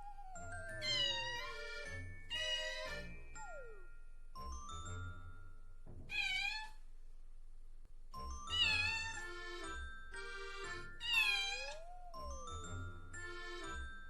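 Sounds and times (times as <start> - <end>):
kitten meowing: 0.0 - 1.4, 2.3 - 2.9, 6.1 - 6.8, 8.6 - 9.2, 11.0 - 12.2
light chiming background music: 0.0 - 6.1, 8.1 - 14.0.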